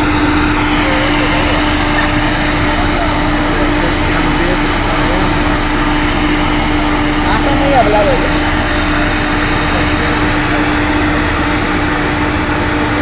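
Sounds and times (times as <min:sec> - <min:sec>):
drilling rig engine running: 0:00.0 - 0:13.0.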